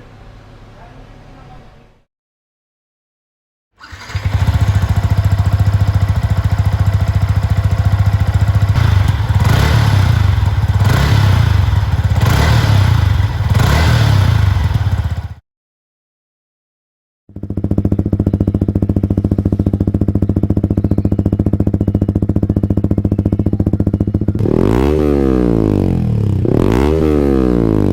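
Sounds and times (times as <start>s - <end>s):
motorcycle engine idling and revving: 3.8s - 15.4s, 17.3s - 27.9s.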